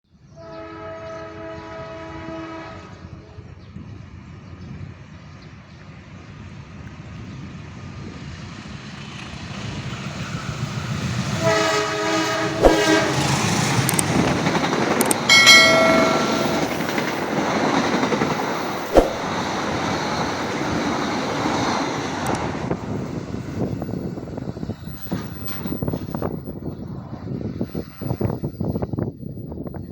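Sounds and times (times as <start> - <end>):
train horn: 0.4 - 3.6, 11.4 - 13.6
train rumble and wheel clatter: 0.8 - 29.9.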